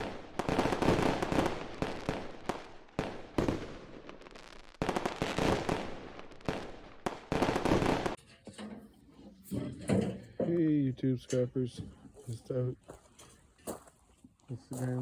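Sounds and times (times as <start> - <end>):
bursts of crackling and popping: 0.0 - 8.2.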